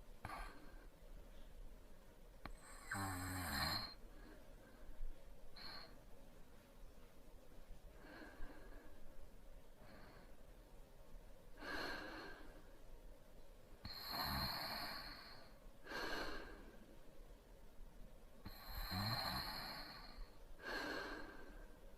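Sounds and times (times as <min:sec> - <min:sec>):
man snoring softly: 0:02.5 - 0:04.0, 0:13.8 - 0:16.8, 0:18.4 - 0:21.6.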